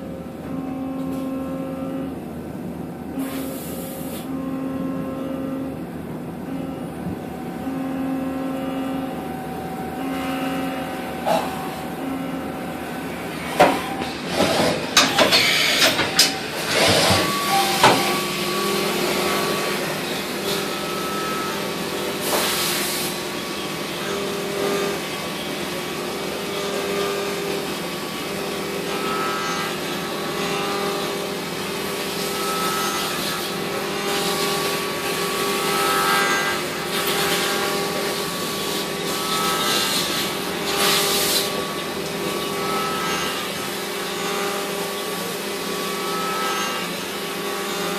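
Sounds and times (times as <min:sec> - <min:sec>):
machining center humming and whining: 0:00.0 - 0:47.9
sharp knocks and clatter: 0:13.6 - 0:18.1.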